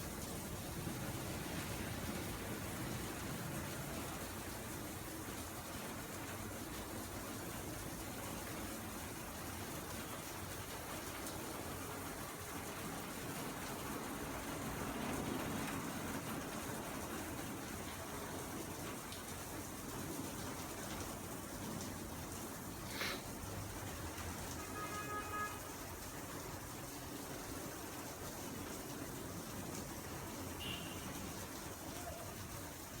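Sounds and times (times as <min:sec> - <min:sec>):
heavy rain falling: 0:00.0 - 0:33.0.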